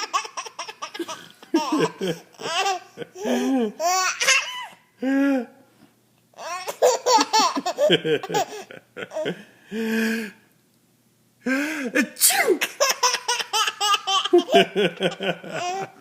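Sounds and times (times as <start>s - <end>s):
baby laughing: 0.0s - 4.8s, 6.4s - 9.4s, 12.0s - 16.0s.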